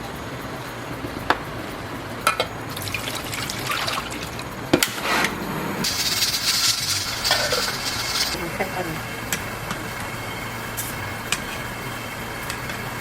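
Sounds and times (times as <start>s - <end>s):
water splashing and trickling: 1.6s - 4.8s.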